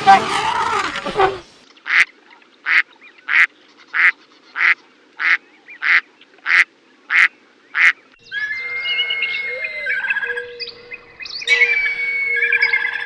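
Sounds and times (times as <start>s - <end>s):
duck quacking: 2.7s - 8.0s
birds chirping: 7.2s - 13.0s.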